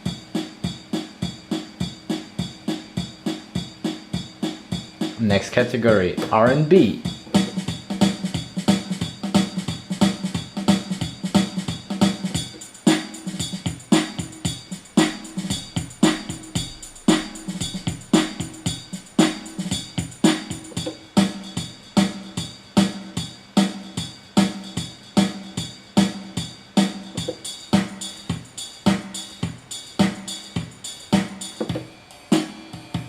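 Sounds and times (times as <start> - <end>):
keyboard drum-machine beat: 0.0 - 33.0
bass and chord notes: 5.2 - 12.3.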